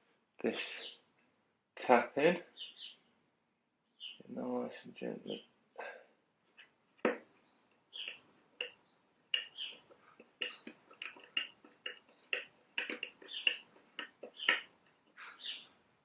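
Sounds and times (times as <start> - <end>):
thread tap clicking and squeaking: 6.6 - 15.6.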